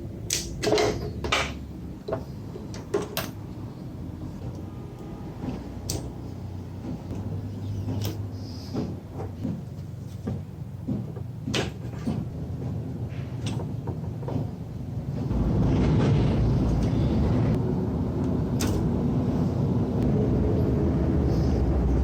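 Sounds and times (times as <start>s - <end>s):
hardware clicks and knocks: 0.3s - 3.4s, 6.8s - 16.2s.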